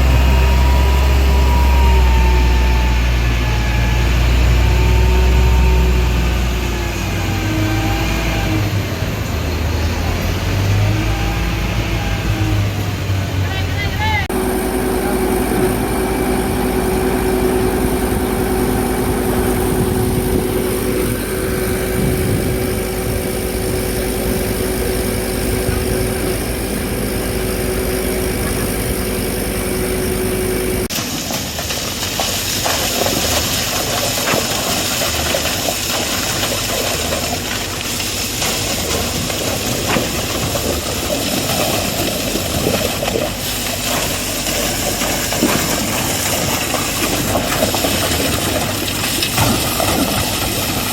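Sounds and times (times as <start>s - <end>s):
diesel engine humming: 0.0s - 50.9s
machinery clicks and rattles: 14.3s - 50.9s.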